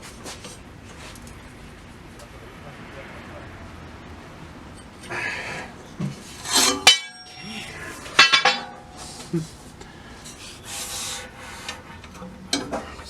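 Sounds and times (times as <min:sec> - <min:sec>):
bicycle frame metal clanks: 0:04.6 - 0:13.0.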